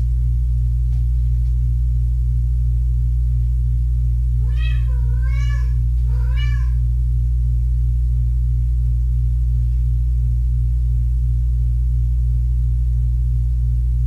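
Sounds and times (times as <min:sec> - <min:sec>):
loud low hum: 0:00.0 - 0:14.0
kitten meowing: 0:04.4 - 0:06.8.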